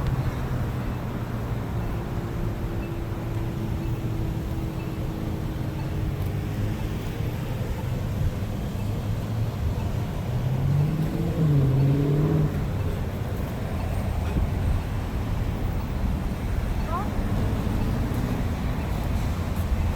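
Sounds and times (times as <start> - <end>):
traffic rumble: 0.0 - 19.9
vehicle engine rising in pitch: 10.4 - 12.9.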